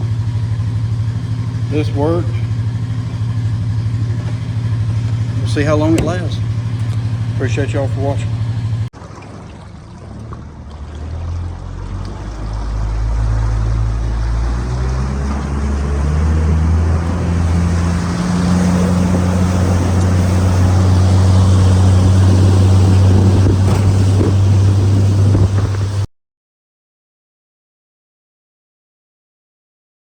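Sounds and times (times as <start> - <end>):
outboard motor running: 0.0 - 26.1
wind on microphone: 12.4 - 26.1.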